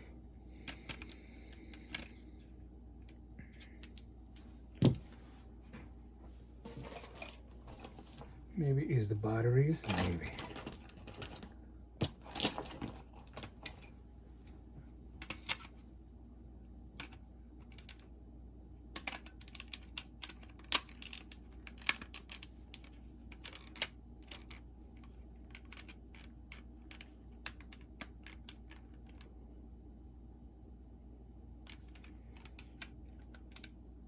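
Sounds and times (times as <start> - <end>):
clicks of small plastic parts: 0.6 - 2.2, 31.6 - 33.8.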